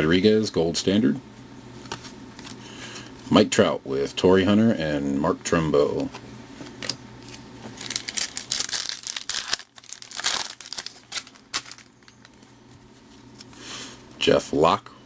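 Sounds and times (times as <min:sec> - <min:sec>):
foil wrapper crinkling: 0:07.2 - 0:12.6.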